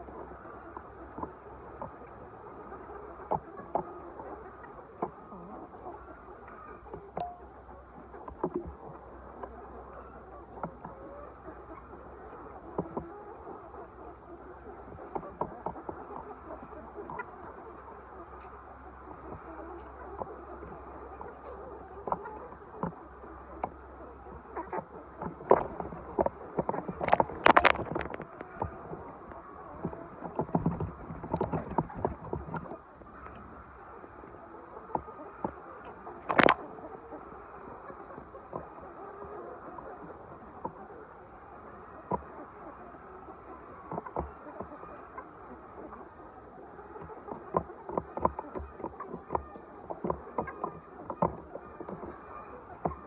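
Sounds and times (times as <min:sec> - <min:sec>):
chickens calling: 0:00.0 - 0:53.0
tapping and knocking: 0:25.5 - 0:28.7, 0:36.2 - 0:36.6.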